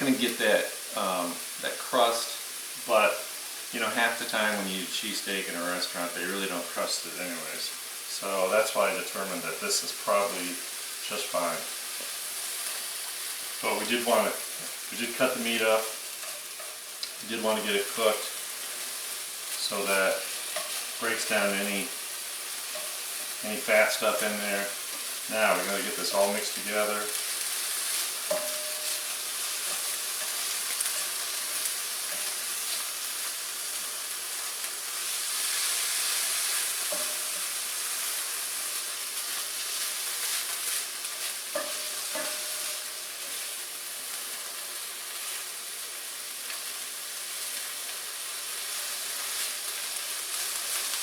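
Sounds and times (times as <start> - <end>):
meat sizzling in a hot pan: 0.0 - 51.0
utensil scraping a pan: 24.0 - 32.8.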